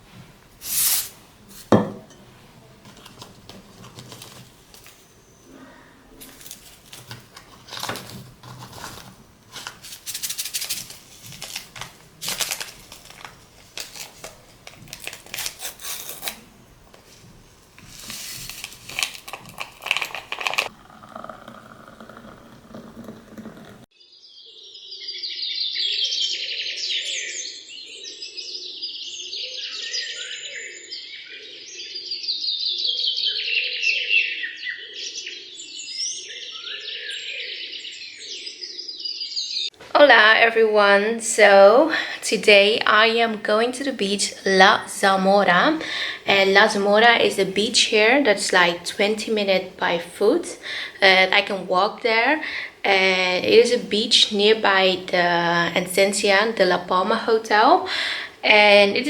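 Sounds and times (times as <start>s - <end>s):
birds chirping and twittering: 24.0s - 39.8s.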